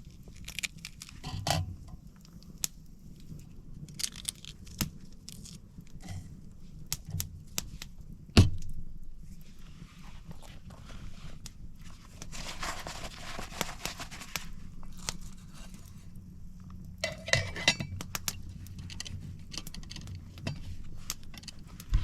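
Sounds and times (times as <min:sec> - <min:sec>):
metal cookware clinking and scraping: 0:01.2 - 0:01.7, 0:17.0 - 0:18.0
rustling: 0:09.2 - 0:22.0.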